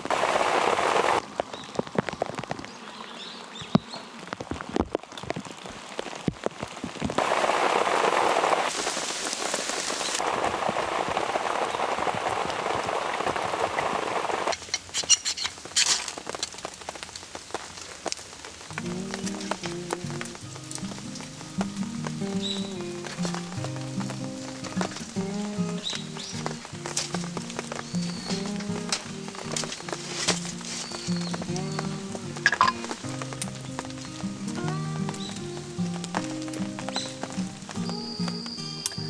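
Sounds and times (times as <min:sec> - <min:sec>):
rain falling: 0:00.0 - 0:39.0
music: 0:18.7 - 0:39.0.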